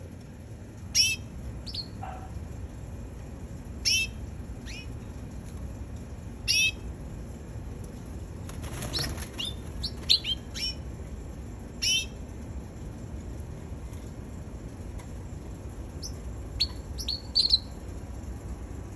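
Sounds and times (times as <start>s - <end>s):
canary chirping: 8.5s - 10.8s, 16.0s - 17.7s.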